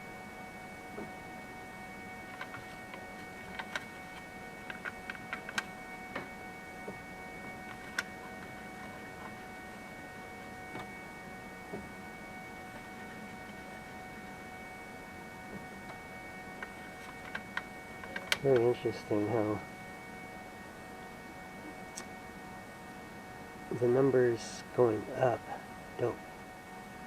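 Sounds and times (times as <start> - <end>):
three d printer whine: 0.0 - 27.0.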